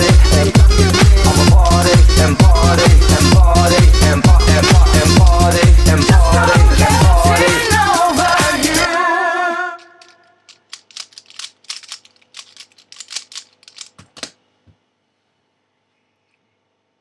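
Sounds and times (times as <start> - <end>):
speed cube clicking: 5.8 - 7.0, 9.8 - 14.3.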